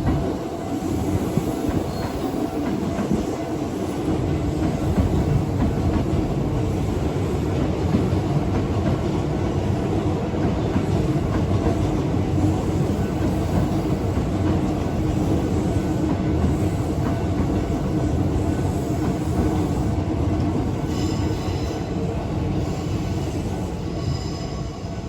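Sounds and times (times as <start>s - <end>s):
train wheels rumbling on rails: 0.0s - 25.0s.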